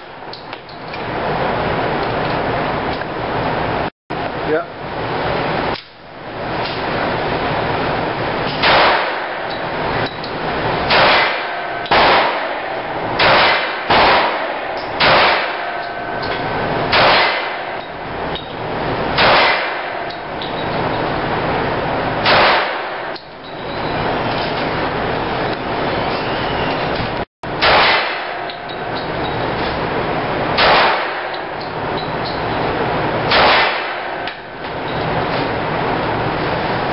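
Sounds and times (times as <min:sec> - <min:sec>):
pistol shots: 0:08.5 - 0:09.5, 0:10.9 - 0:15.8, 0:16.9 - 0:17.8, 0:19.1 - 0:20.1, 0:22.2 - 0:23.2, 0:27.5 - 0:28.5, 0:30.5 - 0:31.5, 0:33.3 - 0:34.4.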